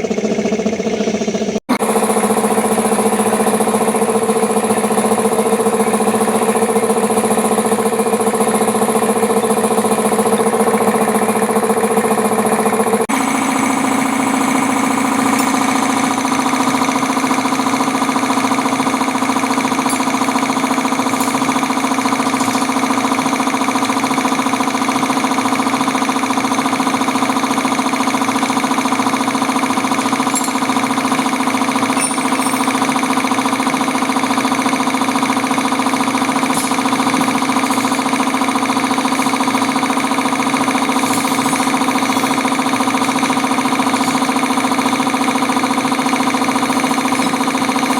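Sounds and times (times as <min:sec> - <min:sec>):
air compressor humming: 0:00.0 - 0:47.9.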